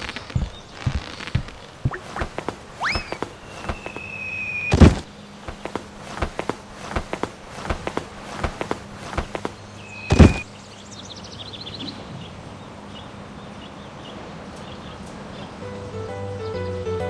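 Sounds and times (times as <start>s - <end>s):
cartoon footsteps: 0.0s - 4.1s, 4.7s - 10.5s
steady background hiss: 0.0s - 17.0s
quick high chirping notes: 1.9s - 4.8s
loud thump: 4.7s - 5.8s, 10.1s - 10.5s.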